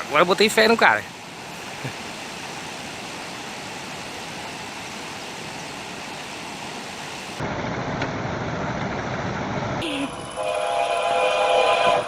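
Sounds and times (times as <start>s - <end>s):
flowing water rushing: 0.0s - 7.4s.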